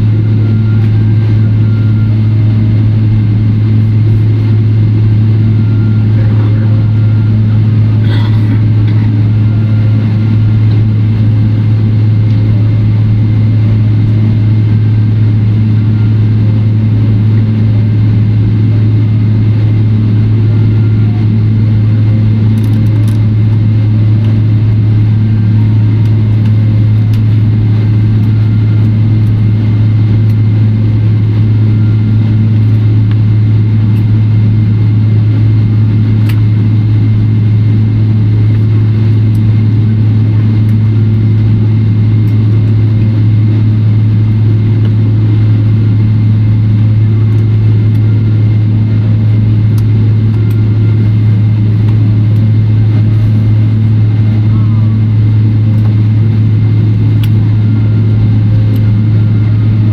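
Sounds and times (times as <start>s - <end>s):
aircraft cabin low hum: 0.0s - 59.9s.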